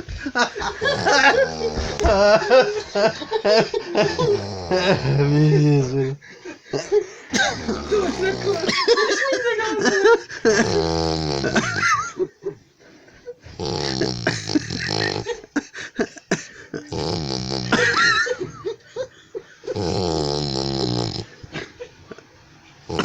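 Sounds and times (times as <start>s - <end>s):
person snoring loudly: 0.8s - 3.2s, 4.0s - 6.2s, 7.3s - 8.8s, 10.4s - 11.9s, 13.5s - 15.4s, 16.8s - 18.3s, 19.7s - 21.3s.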